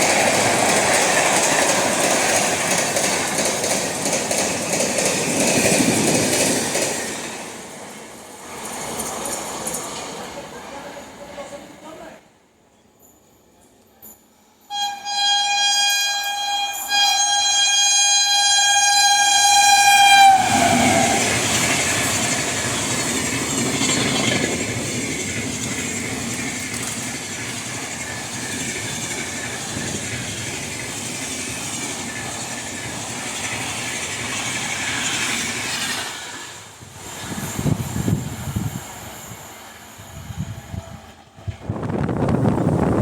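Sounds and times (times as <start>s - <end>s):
train rushing past: 0.0s - 12.2s, 18.6s - 43.0s
shrill train horn: 14.6s - 21.3s.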